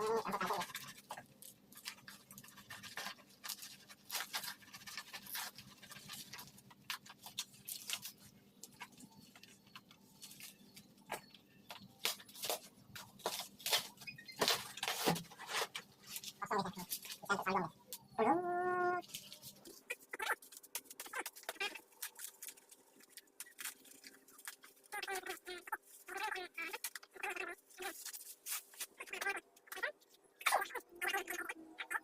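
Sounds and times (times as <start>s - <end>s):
packaging crinkling and rustling: 0.0s - 17.3s, 19.0s - 29.3s.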